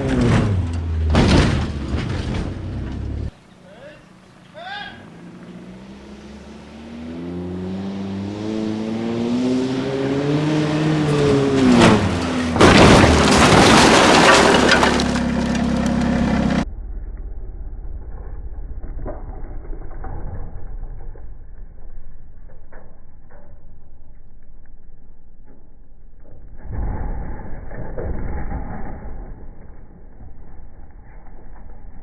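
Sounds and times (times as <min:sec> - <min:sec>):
crash with cracking and breaking: 0:00.0 - 0:03.2, 0:11.0 - 0:16.6, 0:26.5 - 0:32.0
truck engine revving: 0:00.0 - 0:16.7.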